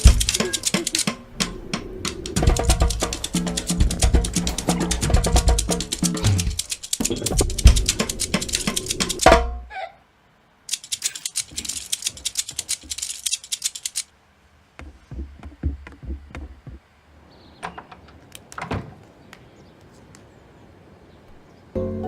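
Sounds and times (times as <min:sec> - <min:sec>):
fast sharp clicks: 0:00.0 - 0:09.5, 0:10.7 - 0:14.1
low thumps: 0:00.0 - 0:09.7
faint steady hiss: 0:00.0 - 0:22.0.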